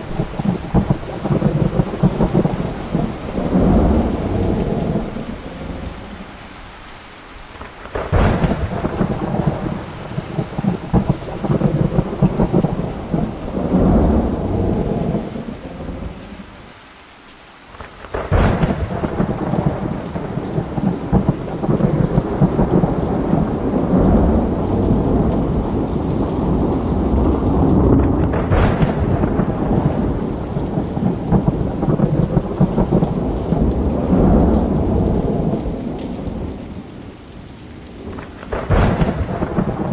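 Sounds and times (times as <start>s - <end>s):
thunder crack and rumble: 0.0s - 6.4s, 7.6s - 16.4s, 17.8s - 37.1s, 37.8s - 39.9s
steady rain: 0.0s - 39.9s.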